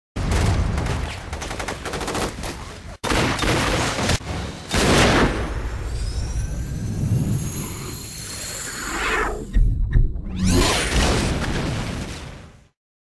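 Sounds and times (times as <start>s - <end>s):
rapid automatic gunfire: 0.2s - 4.2s.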